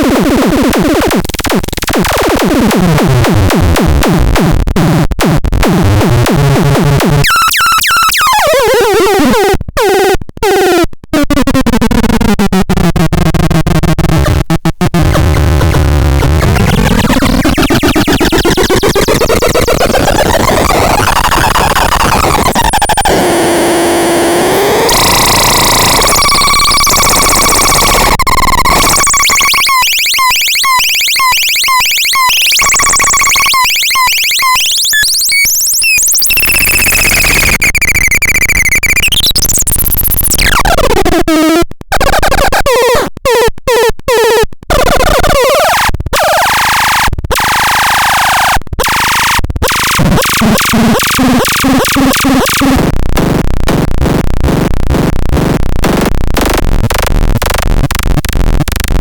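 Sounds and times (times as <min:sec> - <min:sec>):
harsh electronic noise synth: 0:00.0 - 0:04.7, 0:05.5 - 0:09.3, 0:11.2 - 0:41.2, 0:44.7 - 0:59.0.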